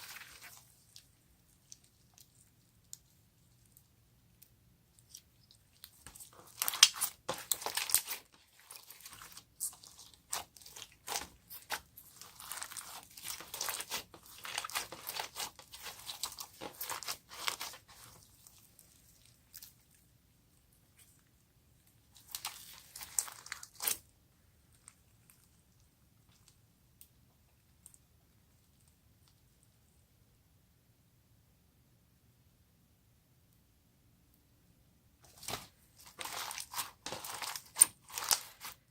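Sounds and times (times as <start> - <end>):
slime crackling and popping: 5.0 - 18.6, 22.1 - 24.0, 35.3 - 38.8.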